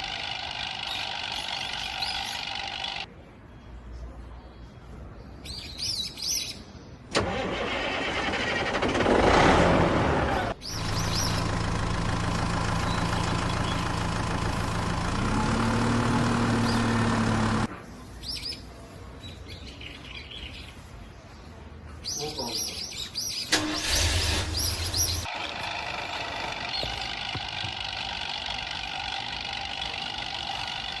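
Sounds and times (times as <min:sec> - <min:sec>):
birds chirping: 0:00.0 - 0:03.1, 0:10.6 - 0:31.0
vehicle engine starting and running: 0:07.1 - 0:17.7, 0:23.5 - 0:31.0.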